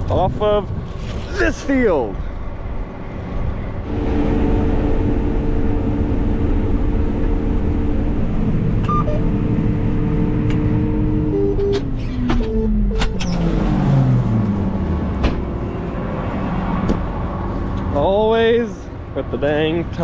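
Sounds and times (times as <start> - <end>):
machine drone: 2.4 - 18.0
two-note hum: 3.8 - 16.3.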